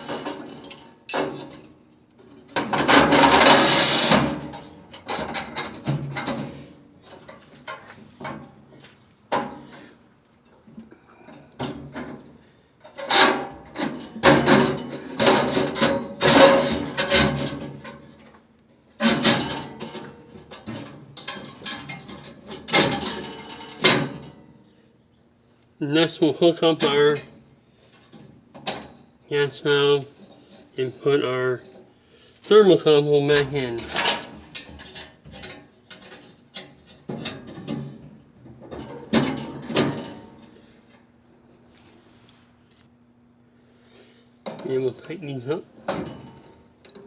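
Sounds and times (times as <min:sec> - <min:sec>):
metal scraping: 0:02.7 - 0:04.6.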